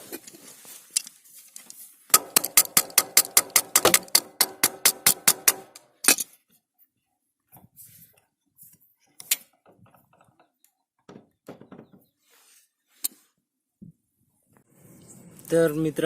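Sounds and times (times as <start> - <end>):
metal parts and tools clinking: 0.1 - 6.5.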